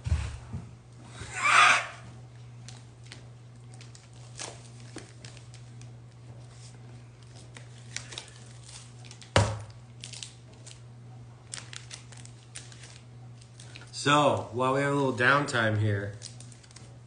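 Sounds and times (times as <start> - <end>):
steady low hum: 0.0 - 17.0
card packaging crinkling and rustling: 2.6 - 10.8, 11.4 - 15.2, 15.8 - 17.0.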